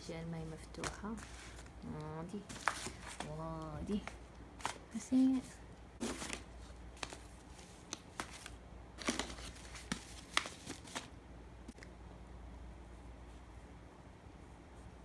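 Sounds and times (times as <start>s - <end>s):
packaging rustling and crinkling: 0.6s - 11.1s.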